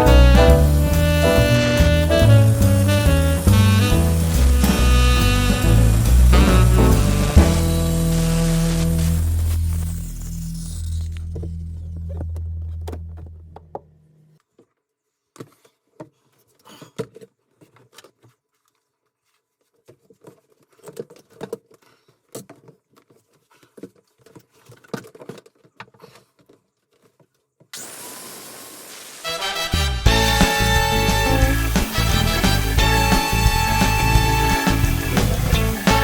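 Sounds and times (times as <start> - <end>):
music: 0.0 - 10.3, 29.2 - 36.0
rush of hiss: 2.2 - 9.7, 27.8 - 30.0.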